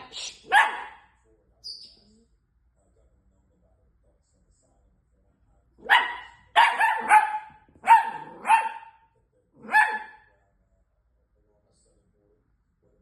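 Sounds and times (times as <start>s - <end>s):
puppy barking high-pitched: 0.0s - 1.2s, 5.8s - 9.0s, 9.6s - 10.3s.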